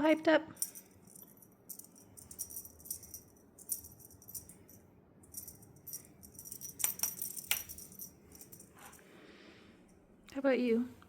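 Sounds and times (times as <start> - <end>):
jingling cat toy rattling: 0.6 - 9.0.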